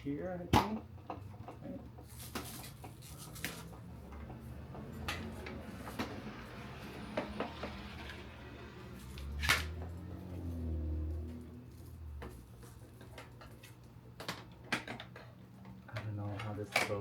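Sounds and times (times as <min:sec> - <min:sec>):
plastic parts clicking and knocking: 0:12.2 - 0:17.0.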